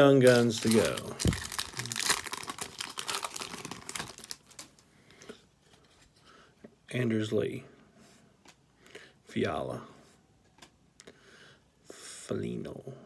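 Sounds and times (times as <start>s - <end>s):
card pack wrapper crinkling: 0.0s - 4.8s
cards being handled: 0.0s - 4.8s.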